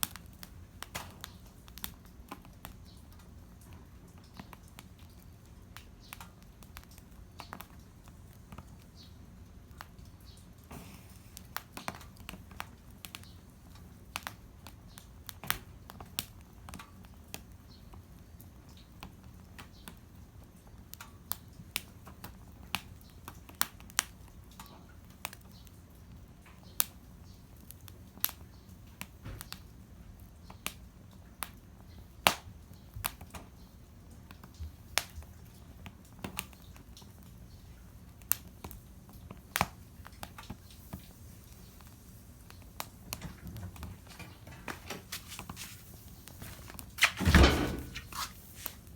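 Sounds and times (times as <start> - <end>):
wood fire crackling: 0.0 - 48.9.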